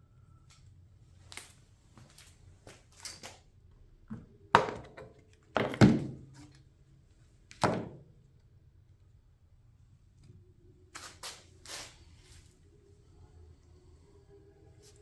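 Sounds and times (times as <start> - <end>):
hard thunks and knocks: 4.1 - 6.3, 7.6 - 8.0.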